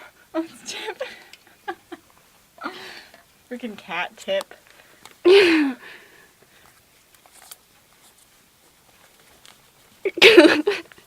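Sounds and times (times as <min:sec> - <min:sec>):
faint ticks and rustles: 0:00.7 - 0:05.3, 0:05.9 - 0:10.1.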